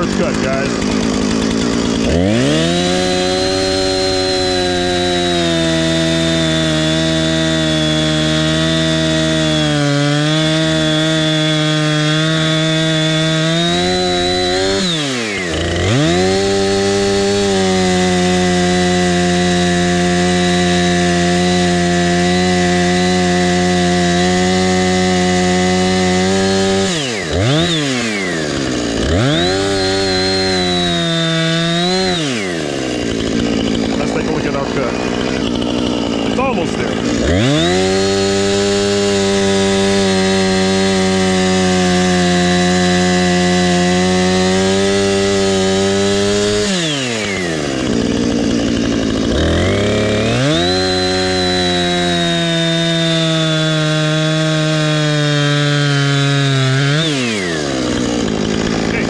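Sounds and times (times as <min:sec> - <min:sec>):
chainsaw cutting tree trunk: 0:00.0 - 0:59.0.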